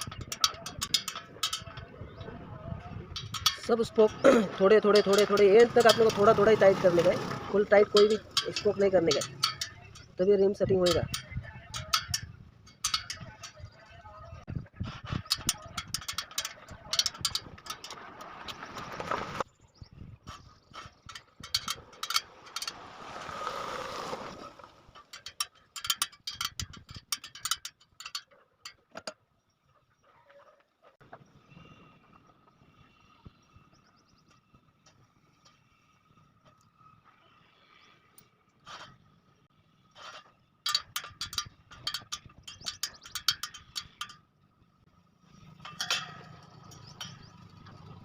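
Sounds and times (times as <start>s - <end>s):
spoke wrench metallic clicks: 0.0s - 2.2s, 3.1s - 4.2s, 4.8s - 6.6s, 7.7s - 13.7s, 15.2s - 18.6s, 40.7s - 44.2s
sharp metallic clicks on spokes: 0.0s - 19.5s, 20.3s - 29.2s, 37.4s - 48.0s.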